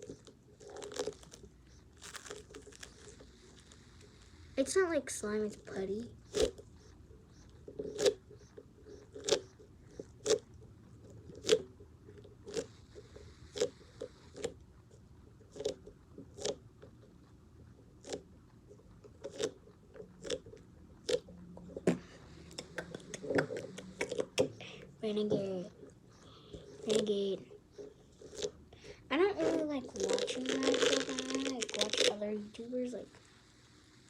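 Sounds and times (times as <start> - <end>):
fidget toy popping: 7.4 - 10.5, 29.3 - 32.2.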